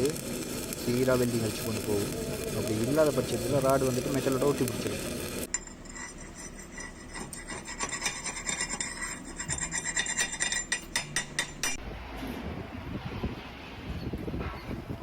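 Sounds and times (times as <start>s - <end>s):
hand tool scraping steel: 5.5s - 11.8s.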